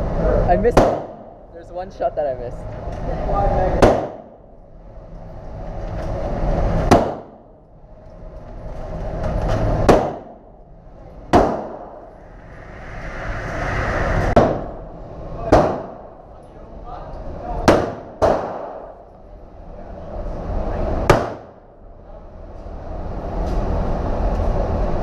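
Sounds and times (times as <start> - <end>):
gunshots with echo: 0.7 - 1.4, 3.8 - 4.4, 6.9 - 7.5, 9.8 - 10.5, 11.3 - 12.1, 15.5 - 16.1, 17.6 - 19.0.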